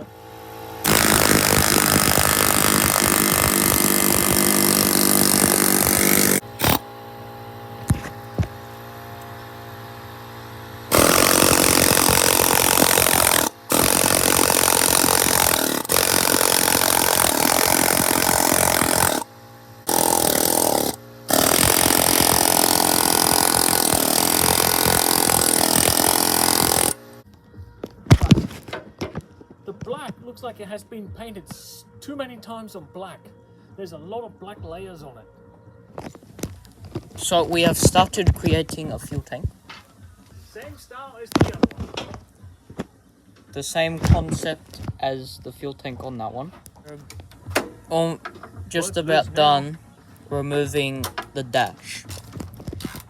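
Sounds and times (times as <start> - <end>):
power tool cutting metal: 0.0 - 7.0, 7.8 - 27.2.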